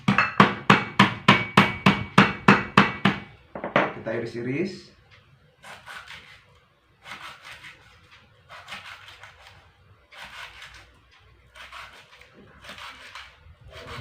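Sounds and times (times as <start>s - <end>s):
knife slicing lemongrass: 7.0s - 14.0s.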